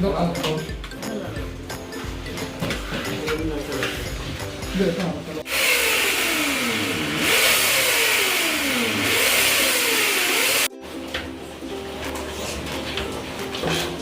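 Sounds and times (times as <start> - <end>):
motor running under load: 5.4 - 10.7.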